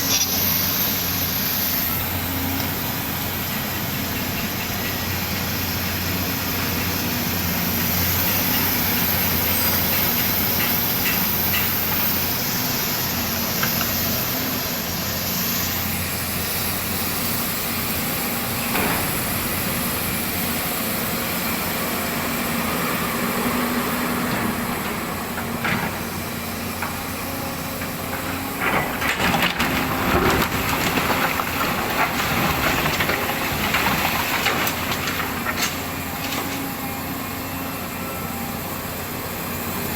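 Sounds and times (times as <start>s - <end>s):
excavator diesel engine running: 0.0s - 39.9s
knocks and scraping rattles: 26.8s - 36.8s.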